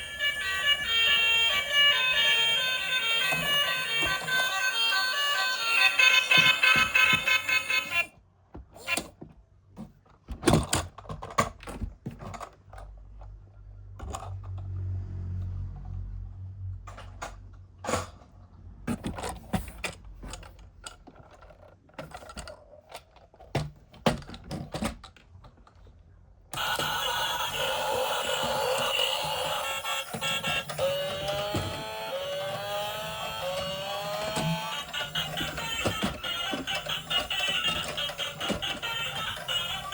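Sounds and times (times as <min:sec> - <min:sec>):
plastic toys being handled: 0:00.0 - 0:08.1, 0:18.9 - 0:26.0, 0:26.6 - 0:39.9.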